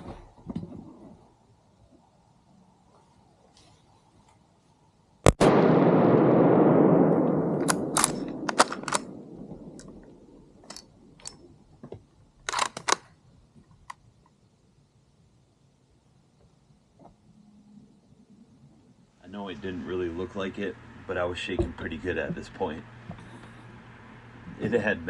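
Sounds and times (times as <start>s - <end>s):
gunshots: 5.3s - 10.5s
sharp clicks and knocks: 7.6s - 14.0s.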